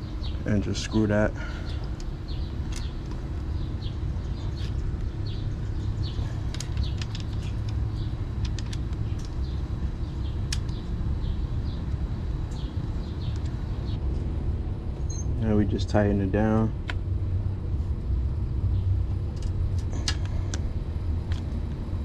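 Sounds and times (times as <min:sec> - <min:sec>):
small birds chirping: 0:00.0 - 0:16.6
traffic rumble: 0:00.0 - 0:22.0.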